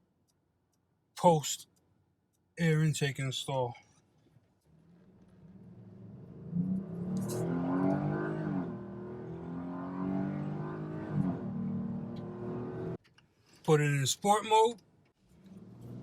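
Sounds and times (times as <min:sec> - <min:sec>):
car engine accelerating hard: 0:04.8 - 0:13.0, 0:15.3 - 0:16.0.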